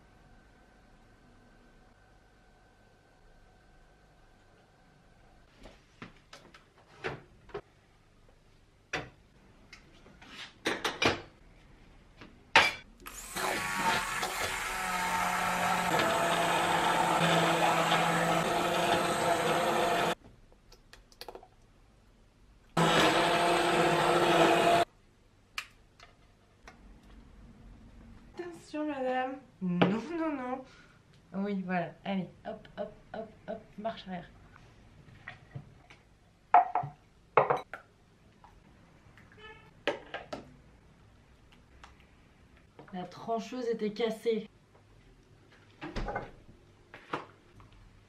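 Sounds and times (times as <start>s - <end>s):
kitchen clicks and knocks: 10.6s - 11.3s
electric blender running: 13.1s - 20.2s, 22.8s - 24.9s.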